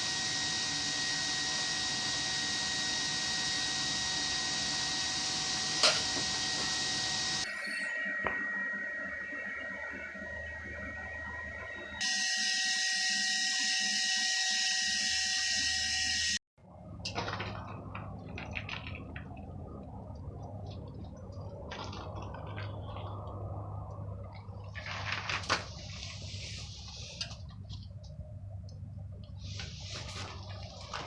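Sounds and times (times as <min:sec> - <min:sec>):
forge air blower whooshing: 0:00.0 - 0:16.2.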